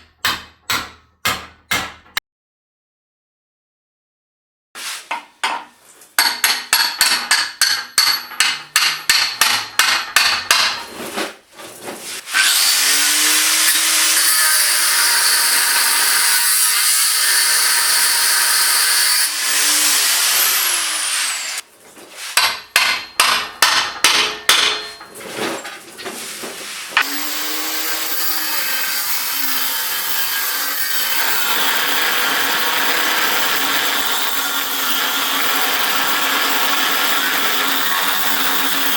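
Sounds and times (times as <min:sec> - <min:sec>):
power grinder cutting steel: 0:12.2 - 0:21.6, 0:27.0 - 0:38.9.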